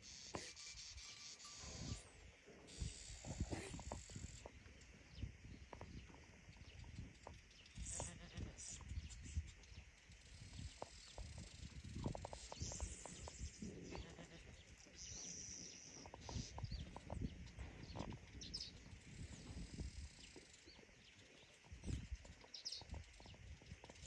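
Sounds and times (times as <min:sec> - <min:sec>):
goats bleating: 0:07.9 - 0:08.6, 0:13.8 - 0:14.6.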